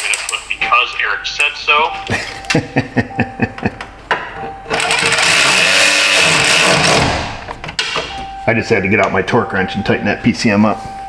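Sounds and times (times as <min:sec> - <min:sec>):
steady mechanical buzz: 0:04.6 - 0:08.2.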